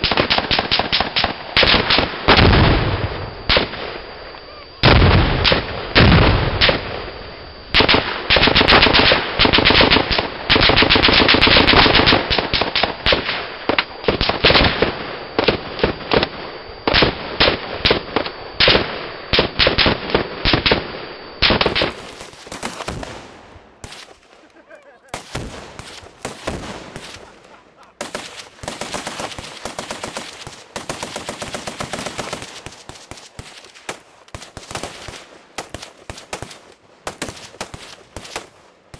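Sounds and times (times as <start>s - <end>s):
machine guns firing bursts: 7.8s - 13.4s, 18.6s - 38.9s
single gunshots: 25.1s - 38.6s.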